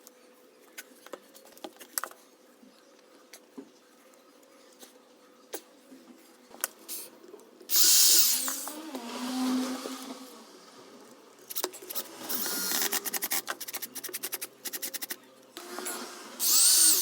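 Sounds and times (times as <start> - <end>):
power drill running: 7.7 - 10.7, 11.9 - 13.4, 15.6 - 17.0.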